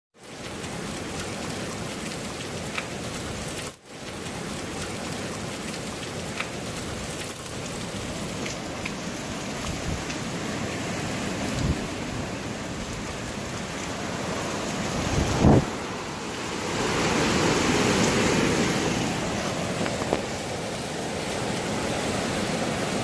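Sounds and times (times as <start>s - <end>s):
heavy rain and wind: 0.2s - 23.0s.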